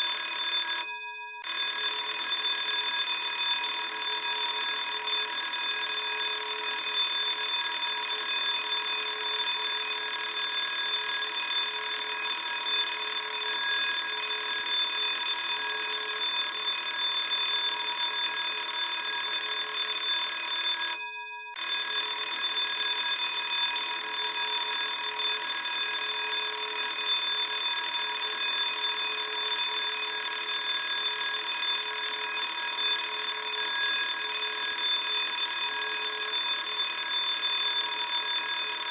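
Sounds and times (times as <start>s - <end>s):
school bell ringing: 8.8s - 9.7s, 28.5s - 38.9s.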